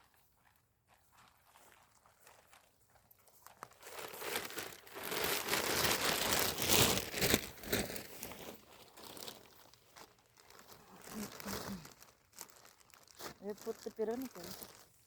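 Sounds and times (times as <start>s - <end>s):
crinkling and rustling: 0.0s - 15.0s.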